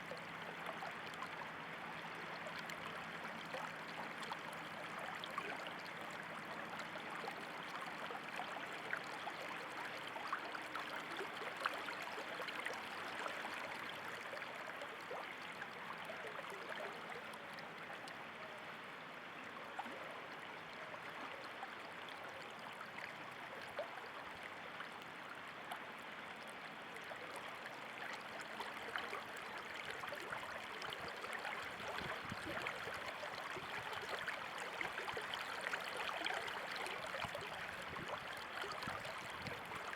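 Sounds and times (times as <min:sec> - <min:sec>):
stream babbling: 0:24.1 - 0:39.9.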